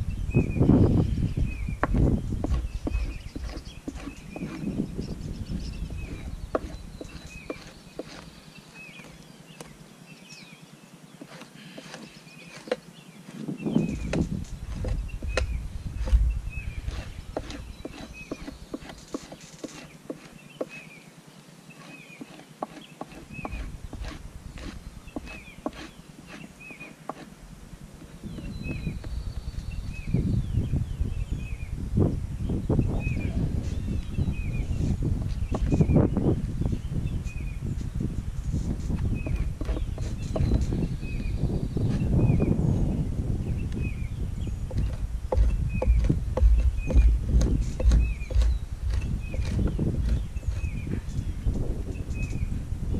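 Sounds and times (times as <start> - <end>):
knife scraping hide: 2.4 - 4.9, 5.9 - 9.2, 11.2 - 21.0, 21.7 - 27.4, 38.4 - 42.2, 44.7 - 51.2.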